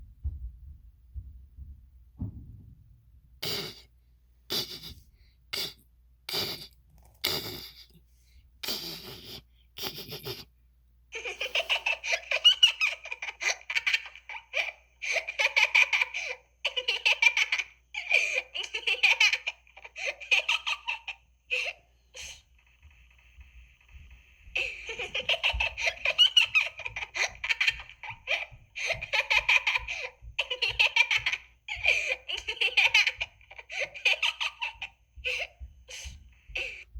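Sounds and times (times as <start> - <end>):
girl's high-pitched giggling: 24.6 - 36.9.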